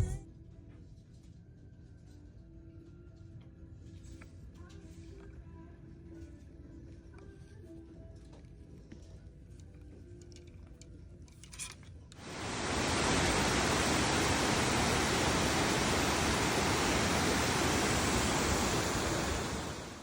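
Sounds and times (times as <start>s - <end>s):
waterfall rushing: 12.2s - 20.0s.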